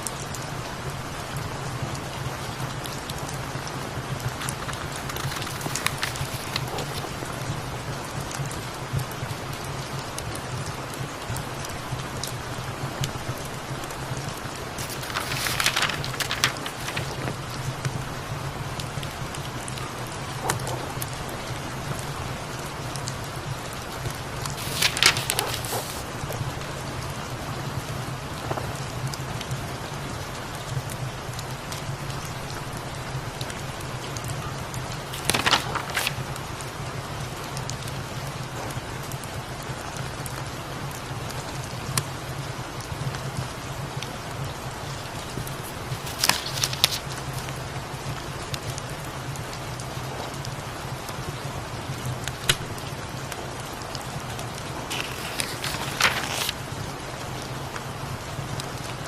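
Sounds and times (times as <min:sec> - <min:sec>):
steady rain: 0:00.0 - 0:59.0
rustle: 0:13.1 - 0:18.0, 0:22.7 - 0:26.4, 0:33.4 - 0:36.5, 0:44.6 - 0:47.7, 0:53.8 - 0:57.8.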